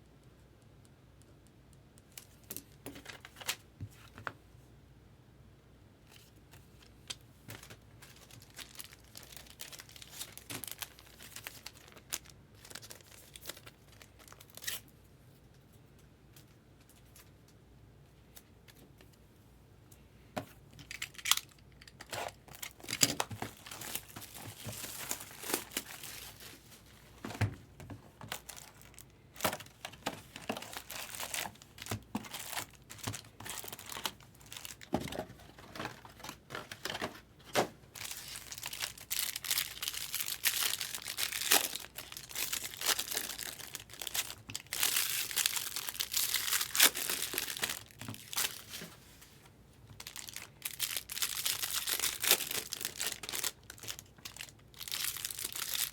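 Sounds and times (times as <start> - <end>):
card pack wrappers tearing: 20.8 - 26.7, 28.3 - 48.8, 50.0 - 55.9.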